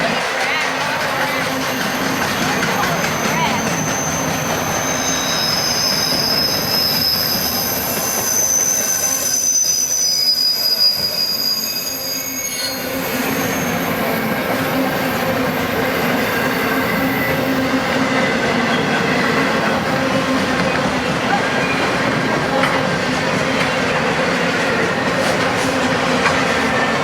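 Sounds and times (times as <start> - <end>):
train cars rolling rumble: 0.0 - 27.0
train wheels squealing: 0.0 - 27.0.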